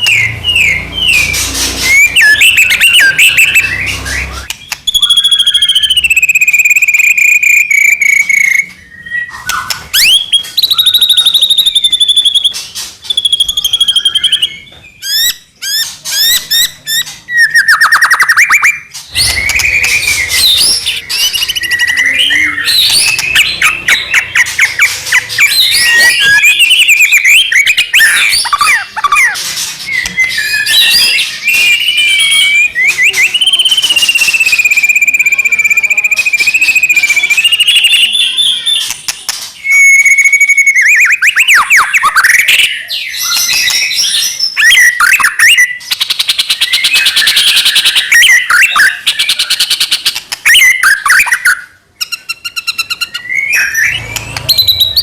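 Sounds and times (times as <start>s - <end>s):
songbird singing whistles and trills: 0.0s - 55.0s.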